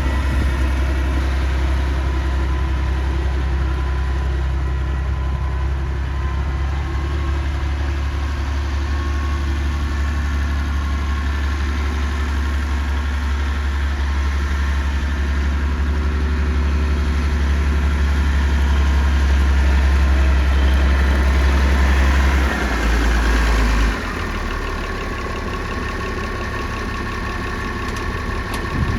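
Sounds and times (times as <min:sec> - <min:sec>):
tractor engine running: 0:00.0 - 0:28.9.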